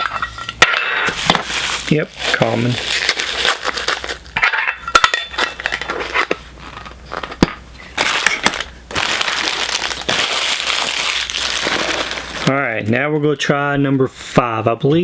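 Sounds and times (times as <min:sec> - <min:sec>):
plastic packaging crinkling: 0:01.1 - 0:04.4, 0:05.3 - 0:12.7.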